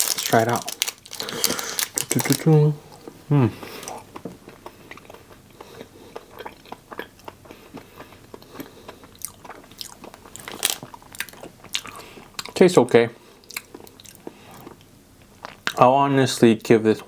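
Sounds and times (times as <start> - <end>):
person chewing crunchy snack: 0.0 - 12.6, 13.4 - 15.8.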